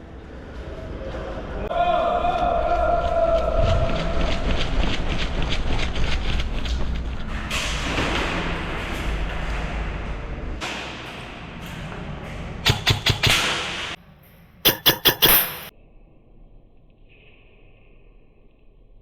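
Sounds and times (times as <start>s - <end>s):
airsoft guns firing: 12.7s - 14.0s.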